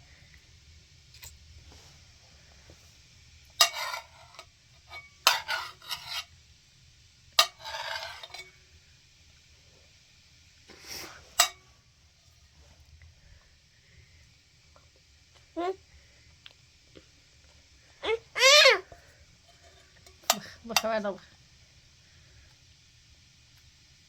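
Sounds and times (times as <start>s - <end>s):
scraping or rubbing: 5.3s - 6.3s.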